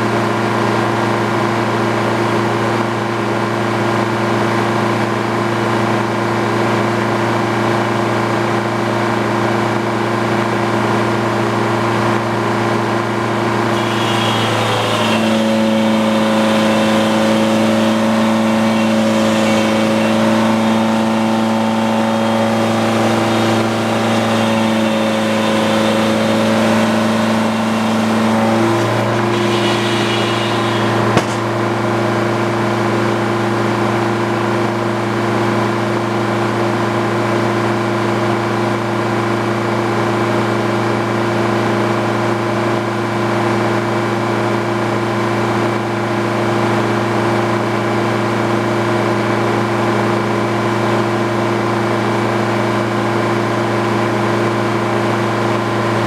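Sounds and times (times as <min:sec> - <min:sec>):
engine driving circular saw: 0:07.8 - 0:36.0, 0:46.4 - 0:56.0
sharp knock: 0:28.7 - 0:31.7.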